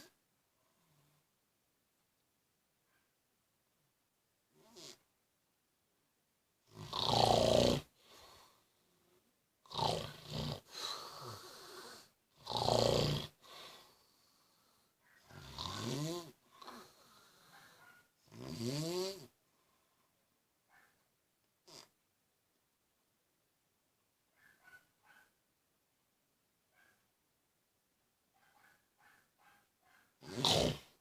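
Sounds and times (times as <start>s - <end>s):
man snoring: 4.6s - 5.0s, 6.7s - 8.4s, 9.7s - 13.8s, 15.4s - 17.4s, 18.3s - 19.3s, 30.2s - 31.0s
soft breath out: 10.7s - 12.2s, 13.4s - 15.0s.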